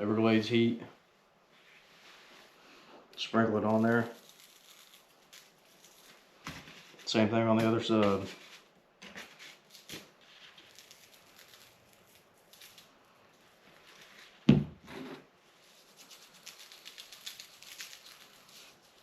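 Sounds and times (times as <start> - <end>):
seasoning shaken from a shaker: 3.7 - 6.2, 15.6 - 19.0.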